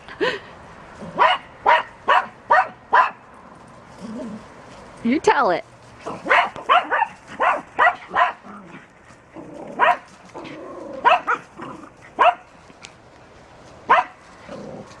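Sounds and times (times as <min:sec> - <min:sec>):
dog barking: 0:01.2 - 0:03.2, 0:06.2 - 0:08.4, 0:09.8 - 0:10.1, 0:11.0 - 0:11.4, 0:12.2 - 0:12.5, 0:13.9 - 0:14.2.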